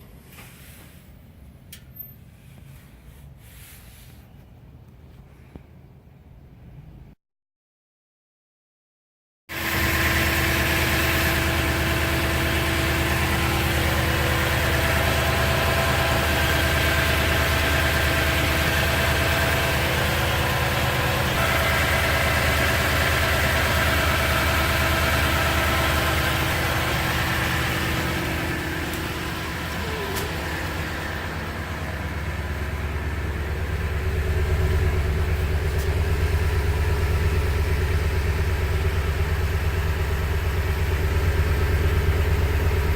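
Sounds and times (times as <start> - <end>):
car engine idling: 9.5 - 42.9.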